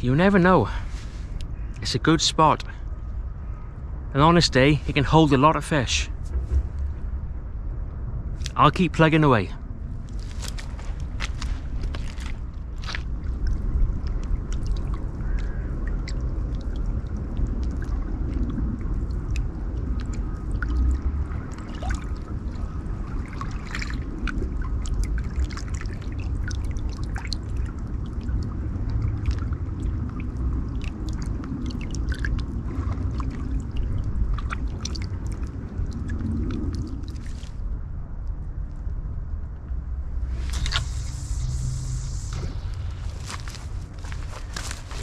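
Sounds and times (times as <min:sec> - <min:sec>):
steady low rumble: 0:00.0 - 0:45.0
water trickling and lapping: 0:09.8 - 0:37.8, 0:40.1 - 0:45.0
small splashes and drips: 0:10.0 - 0:37.7, 0:40.4 - 0:41.6.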